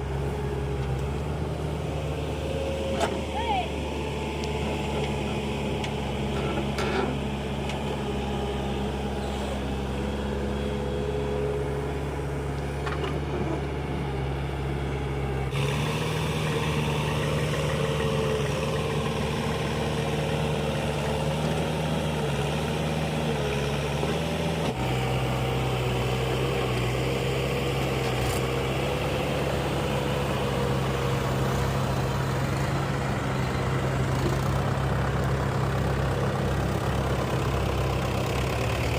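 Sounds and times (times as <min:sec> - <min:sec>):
heavy diesel machinery running: 0:00.0 - 0:38.9.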